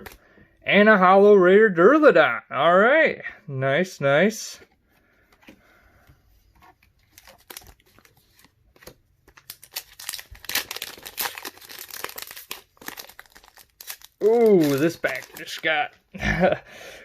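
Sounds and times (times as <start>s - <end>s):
foil wrapper tearing and crinkling: 9.3s - 15.8s.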